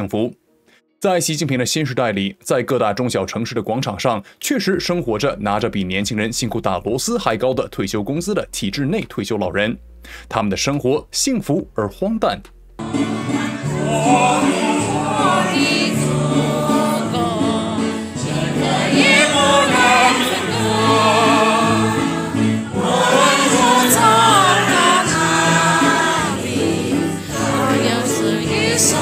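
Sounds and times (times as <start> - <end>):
low musical accompaniment: 4.8 - 29.0
elderly people singing in chorus: 13.2 - 29.0.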